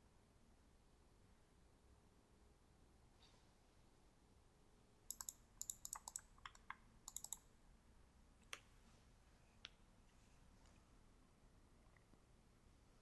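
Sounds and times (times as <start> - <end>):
keyboard typing: 5.1 - 7.5.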